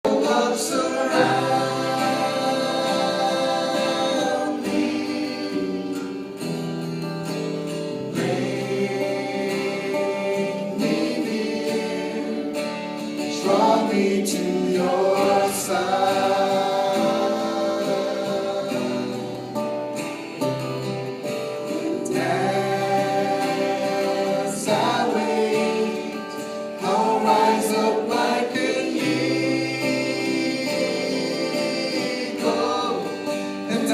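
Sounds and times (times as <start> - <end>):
choir singing in harmony: 0.0 - 33.9.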